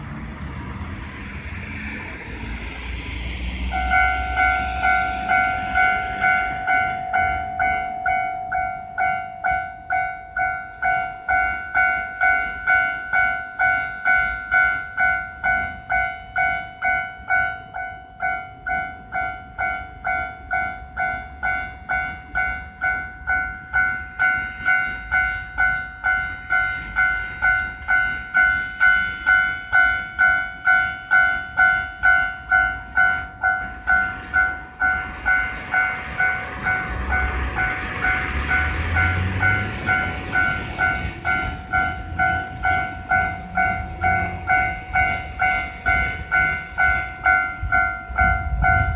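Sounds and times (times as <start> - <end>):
rushing noise with low rumble: 0.0 - 8.4, 33.3 - 48.9
level-crossing warning bell: 1.8 - 48.9.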